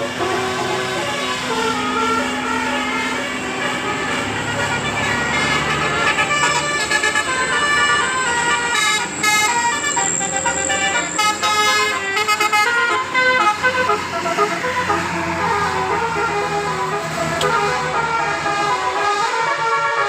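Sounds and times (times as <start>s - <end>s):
bus horn playing a tune: 0.0s - 20.0s.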